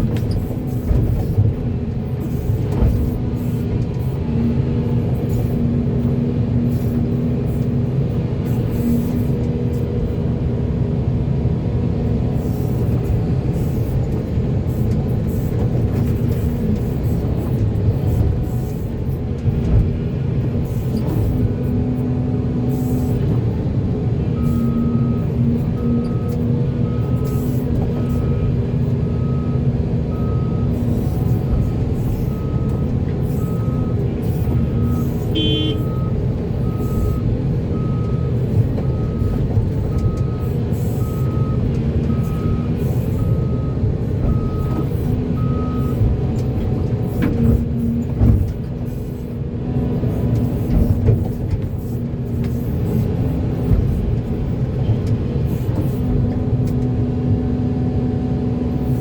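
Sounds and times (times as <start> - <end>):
heavy diesel engines running: 0.0 - 59.0
backup alarm beeping: 34.7 - 37.2.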